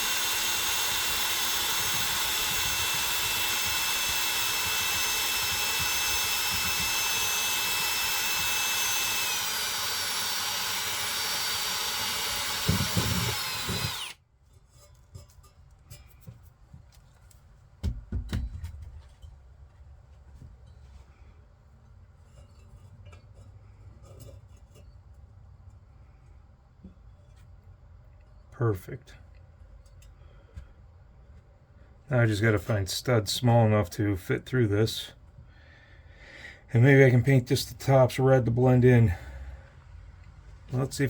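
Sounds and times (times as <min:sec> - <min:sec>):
power drill whining: 0:00.0 - 0:14.2.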